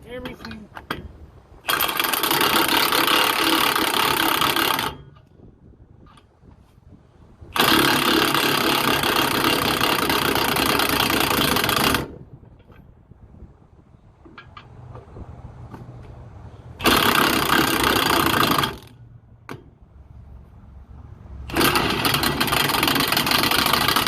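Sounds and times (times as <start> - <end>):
angle grinder cutting metal: 7.6 - 12.1, 16.8 - 19.0, 21.5 - 24.0.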